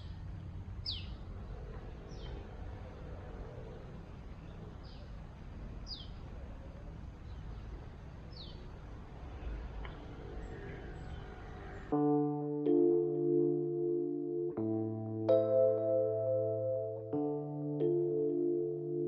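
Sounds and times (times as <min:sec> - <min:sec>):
outdoor background noise: 0:00.0 - 0:13.0
electric piano music: 0:11.9 - 0:19.0.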